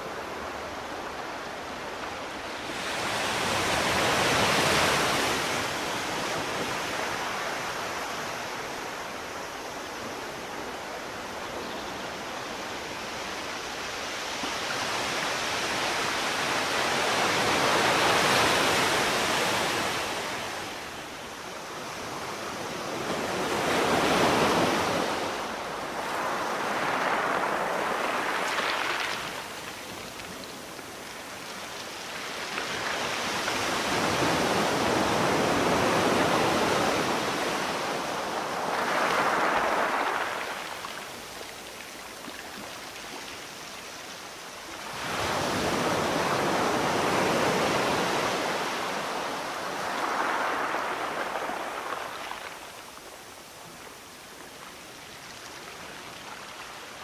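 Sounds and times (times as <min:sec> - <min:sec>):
sea waves breaking: 0:22.9 - 0:31.3, 0:31.9 - 0:41.3, 0:44.9 - 0:52.8.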